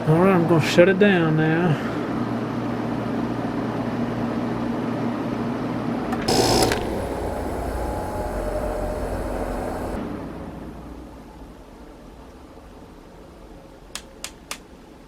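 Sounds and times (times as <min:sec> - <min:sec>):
air conditioner humming: 0:06.3 - 0:10.0
switch click: 0:06.3 - 0:10.0.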